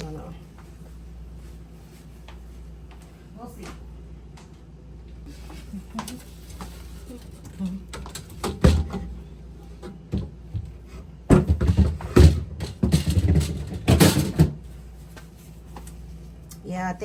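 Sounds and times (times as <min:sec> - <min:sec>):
plastic shelves clunking and scraping: 0:06.0 - 0:14.8.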